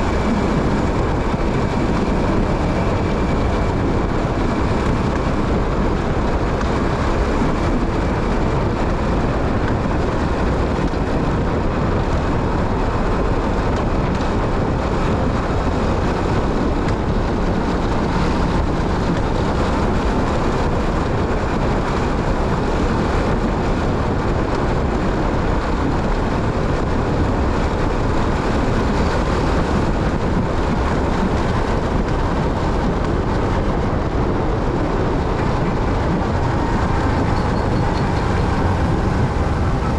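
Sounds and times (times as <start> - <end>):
motorcycle engine and road noise: 0.0 - 39.9.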